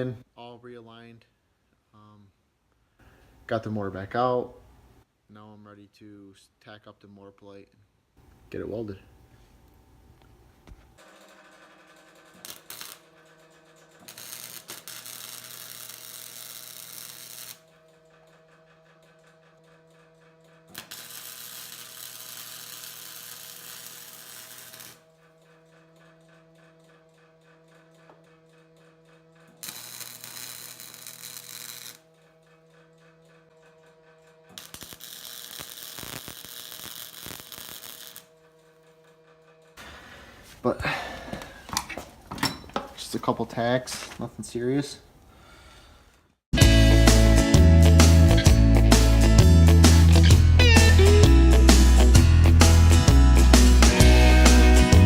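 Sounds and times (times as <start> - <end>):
welding arc sizzling: 11.0 - 13.2, 14.0 - 17.6, 20.7 - 25.0, 29.6 - 32.1, 34.5 - 38.3.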